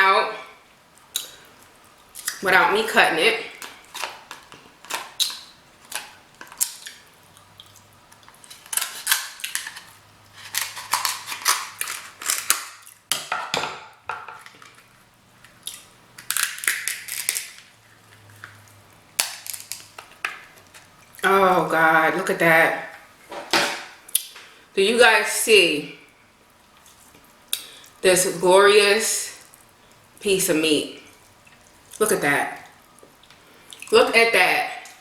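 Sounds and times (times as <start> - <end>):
crab shell cracking: 1.0 - 2.4, 3.5 - 13.3, 14.3 - 21.2.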